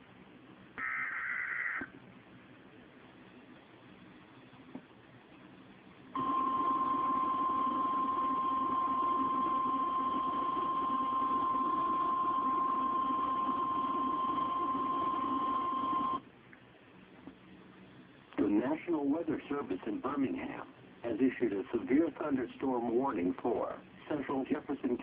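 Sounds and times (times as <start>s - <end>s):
loud steady alarm tone: 6.2s - 16.2s
radio hiss: 17.7s - 25.0s.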